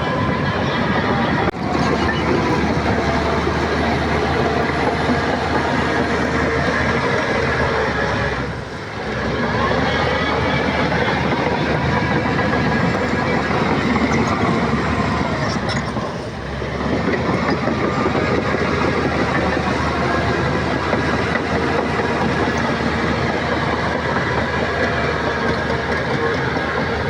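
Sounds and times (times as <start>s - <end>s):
bulldozer diesel engine: 0.0s - 27.0s
steel tracks running: 0.0s - 27.0s.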